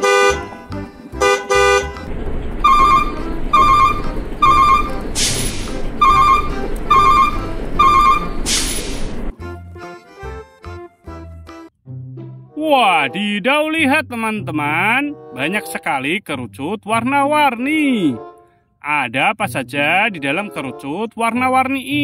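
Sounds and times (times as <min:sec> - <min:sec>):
truck horn toots: 0:00.0 - 0:08.8
low engine rumble: 0:00.0 - 0:09.7
repeating beep: 0:02.7 - 0:05.0, 0:06.0 - 0:08.4
loud air hisses: 0:05.2 - 0:05.8, 0:08.4 - 0:09.3.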